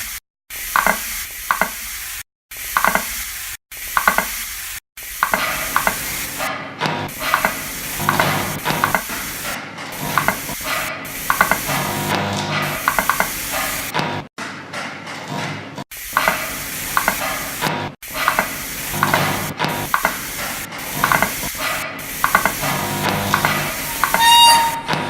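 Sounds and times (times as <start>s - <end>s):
steady hiss: 0.0s - 6.5s, 18.2s - 24.8s
rapid ratchet-like clicks: 11.3s - 11.8s, 22.2s - 24.2s.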